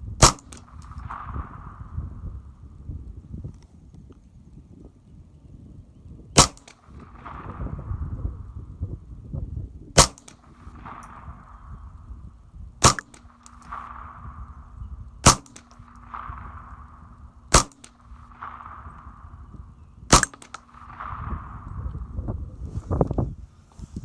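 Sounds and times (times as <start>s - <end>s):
wind rumble on microphone: 0.0s - 24.0s
rifle shots: 0.2s - 2.7s, 6.4s - 8.6s, 10.0s - 22.2s.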